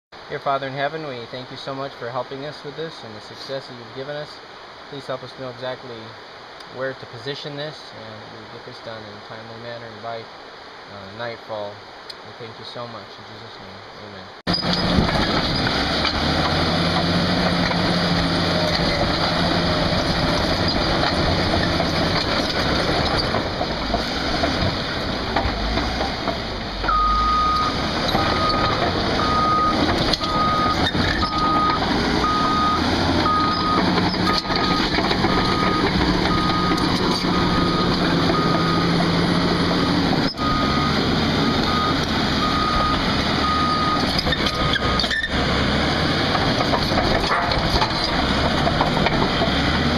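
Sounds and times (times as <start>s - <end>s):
heavy vehicle engine running: 14.5s - 49.9s
backup alarm beeping: 26.9s - 45.1s.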